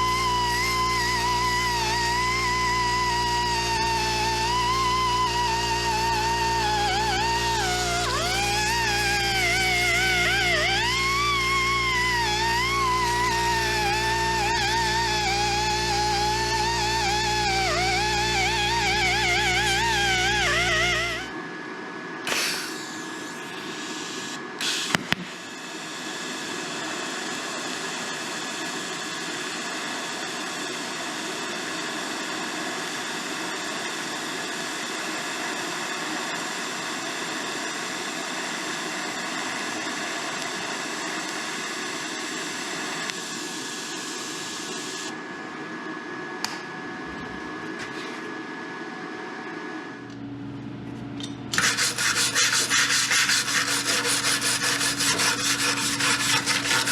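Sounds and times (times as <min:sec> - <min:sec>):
spray paint can hissing: 0:51.6 - 0:56.9.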